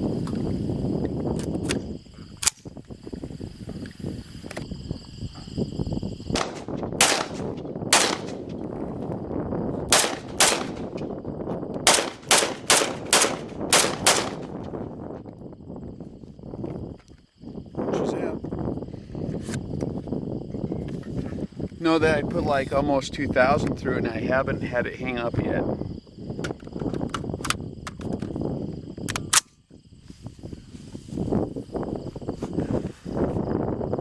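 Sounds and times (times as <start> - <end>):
rifle shots: 6.4 - 8.5, 9.9 - 11.0, 11.8 - 14.5.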